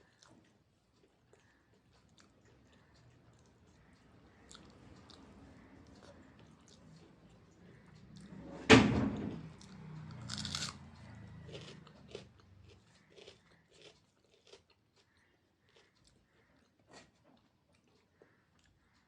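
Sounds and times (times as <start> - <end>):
wet chewing: 0.0 - 8.4, 9.4 - 19.0
crunchy bite: 9.6 - 10.8, 11.4 - 15.9.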